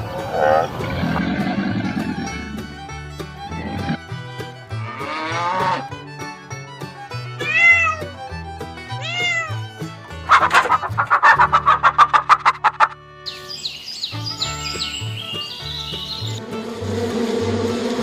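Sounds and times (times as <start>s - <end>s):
background music with beat: 0.0s - 13.2s
fast pulsed cat calls: 7.4s - 8.1s, 9.0s - 9.6s
cat meowing: 7.4s - 8.2s, 8.9s - 9.7s.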